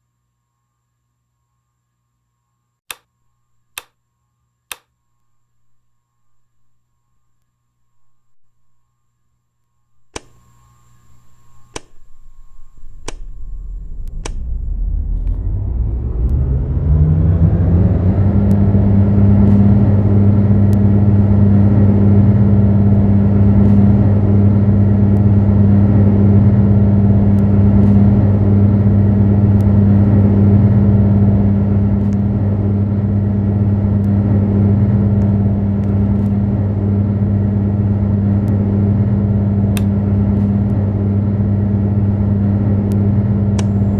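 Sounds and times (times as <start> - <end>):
fan switch clicks: 4.7 - 4.9, 10.1 - 10.4, 11.6 - 14.6, 39.7 - 40.8, 42.9 - 43.9
electric fan motor hum: 9.8 - 43.9
rush of air: 13.2 - 19.4.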